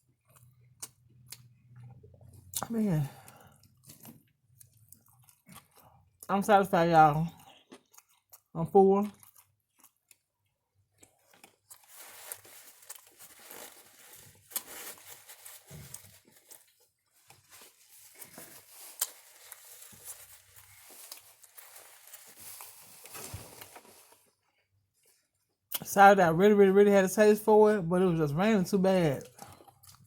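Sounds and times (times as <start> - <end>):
food packaging crinkling: 11.1 - 24.5.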